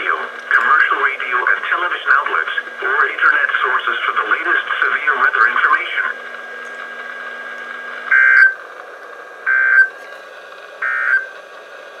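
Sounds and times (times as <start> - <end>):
radio hiss: 0.0 - 6.2
digital data tone bursts: 8.1 - 8.6, 9.5 - 9.9, 10.8 - 11.3.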